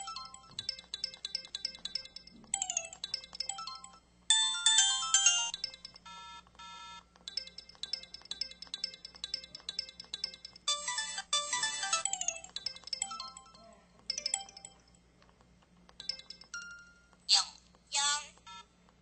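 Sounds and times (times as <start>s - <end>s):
mobile phone electronic tones: 3.0s - 13.6s.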